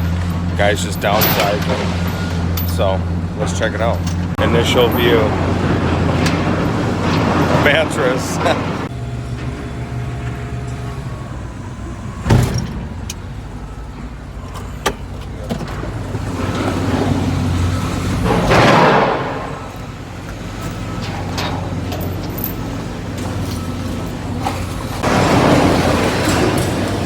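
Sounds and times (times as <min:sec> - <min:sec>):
heavy diesel engine running: 0:00.0 - 0:27.0
loud metallic bang: 0:09.2 - 0:13.6, 0:18.2 - 0:19.7.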